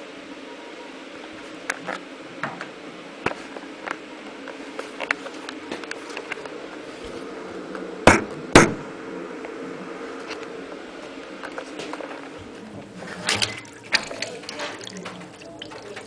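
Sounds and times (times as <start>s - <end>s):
washing machine humming: 0.0s - 16.0s
sharp knocks: 8.1s - 8.8s.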